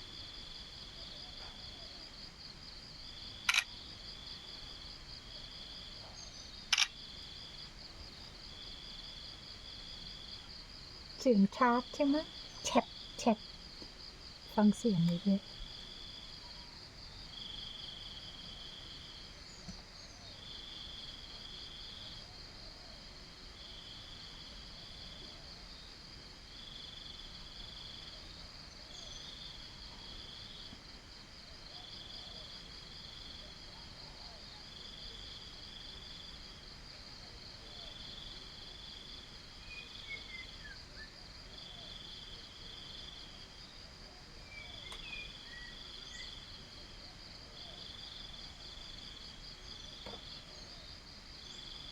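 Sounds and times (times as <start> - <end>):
high insect trill: 2.4 - 22.5
lower insect trill bursts: 3.4 - 3.8
faint bird chirps: 39.6 - 41.2, 44.4 - 46.4.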